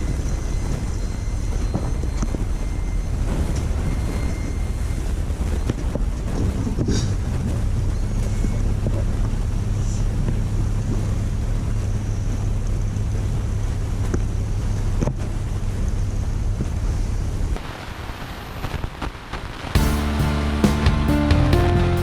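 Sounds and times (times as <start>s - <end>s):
wind buffeting microphone: 0.0s - 12.1s.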